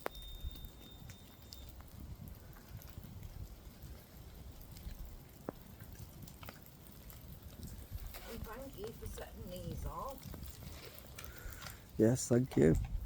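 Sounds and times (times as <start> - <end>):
faint clicks: 10.2 - 11.8.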